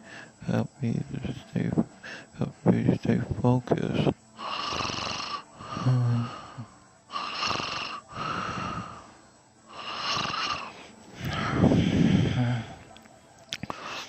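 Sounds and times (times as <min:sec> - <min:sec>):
man snoring: 0:04.4 - 0:09.1, 0:09.7 - 0:12.8.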